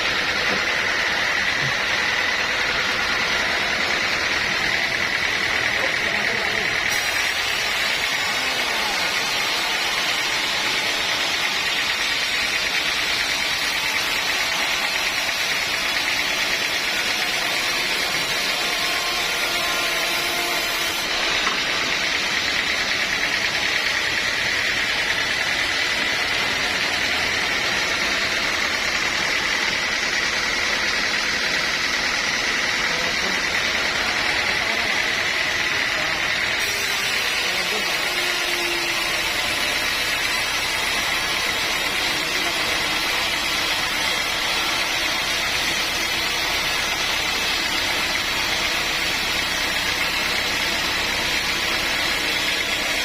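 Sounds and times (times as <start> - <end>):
dense mechanical noise: 0.0 - 53.0
saw high-pitched whine: 0.0 - 53.0.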